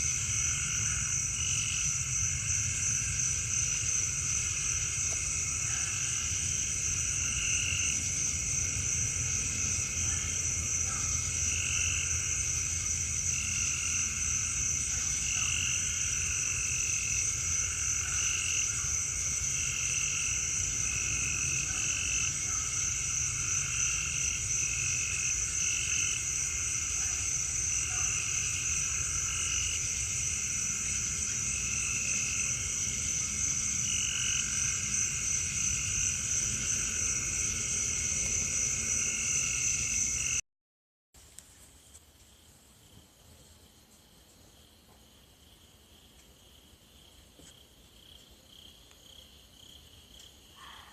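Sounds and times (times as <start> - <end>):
frogs croaking: 0.0 - 40.4.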